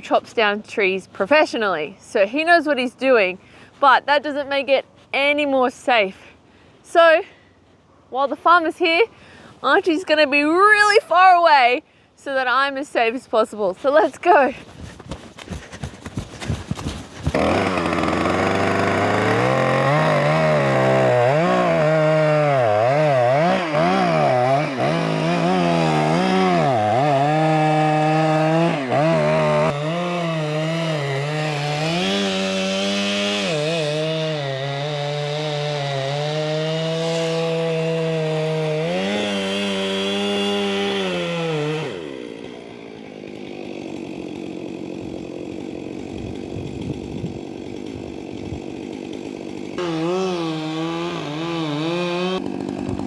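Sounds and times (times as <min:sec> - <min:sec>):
chainsaw cutting wood: 0:13.9 - 0:53.0.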